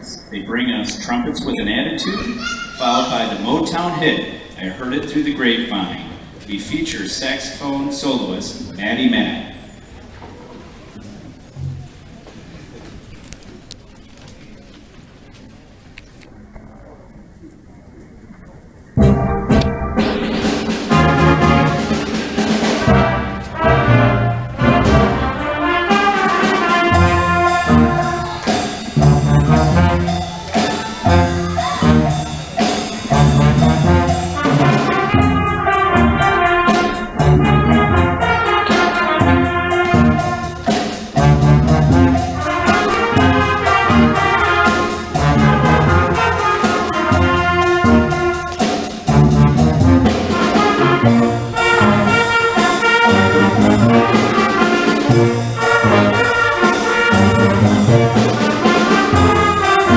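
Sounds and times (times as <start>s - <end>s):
jazz band playing: 19.0s - 59.9s
trumpets and trombones: 19.0s - 59.9s
pulsing bass beat: 33.1s - 44.4s.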